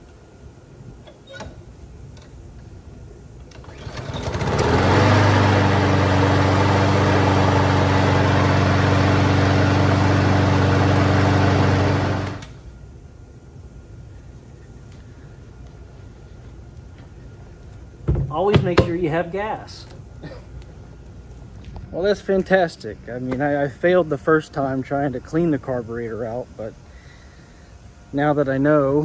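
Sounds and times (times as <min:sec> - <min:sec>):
lawn mower engine running: 0:03.4 - 0:12.6.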